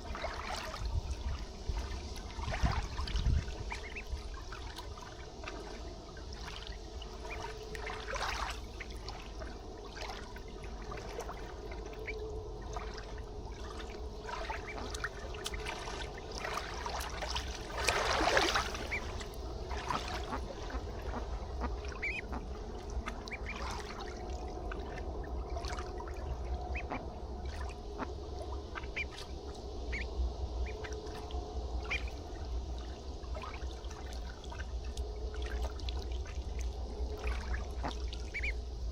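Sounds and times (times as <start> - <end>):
water trickling and lapping: 0.0 - 38.9
ducks calling: 14.3 - 17.1, 17.7 - 24.0, 26.7 - 29.3, 29.9 - 31.2, 37.2 - 38.6.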